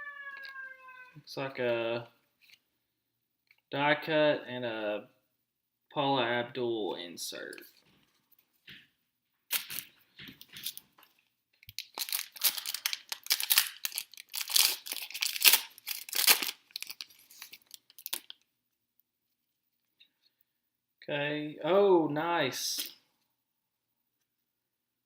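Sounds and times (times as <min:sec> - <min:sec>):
card pack wrapper crinkling: 0:11.7 - 0:18.4.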